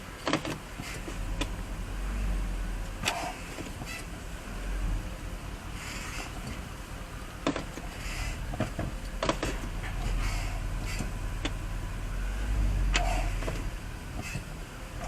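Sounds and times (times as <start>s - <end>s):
car engine low rumble: 0.0s - 15.0s
sharp clicks and knocks: 0.2s - 1.6s, 7.4s - 10.2s, 10.8s - 11.6s, 12.9s - 14.5s
faint brake squeaks: 3.0s - 4.1s, 7.6s - 11.6s, 12.9s - 14.5s.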